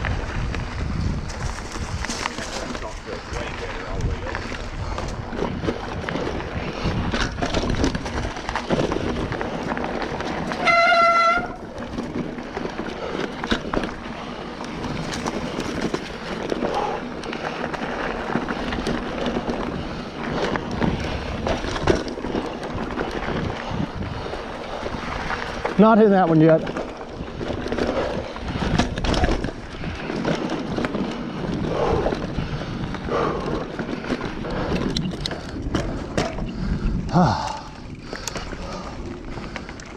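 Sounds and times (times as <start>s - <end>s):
bike rattling over dirt trail: 0.0s - 39.9s
wind buffeting camera: 0.0s - 39.9s
bike brake squealing: 10.5s - 11.8s.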